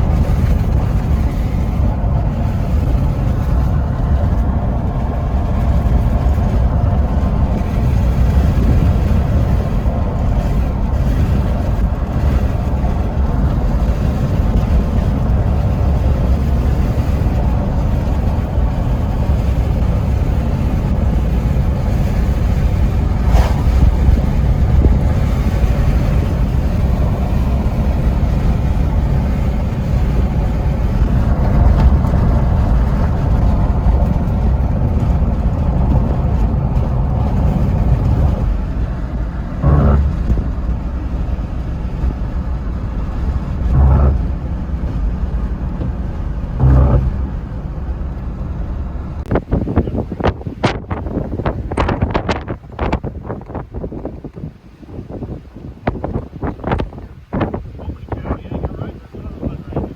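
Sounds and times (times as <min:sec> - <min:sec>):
car engine and road noise: 0:00.0 - 0:59.9
short knock: 0:46.6 - 0:47.4.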